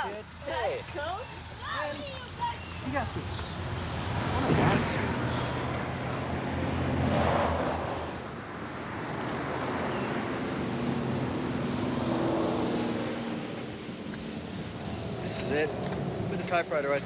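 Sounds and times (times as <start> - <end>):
vehicle engines running: 0.0 - 17.0
second engine revving higher: 2.9 - 8.2.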